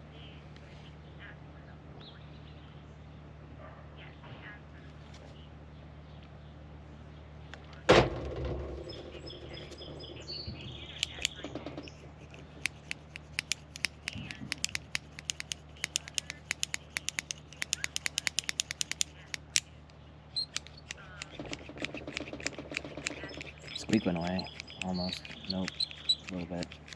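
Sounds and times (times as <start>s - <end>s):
carabiner gate clicking: 12.7s - 19.7s
carabiner gate squeak: 20.4s - 26.9s.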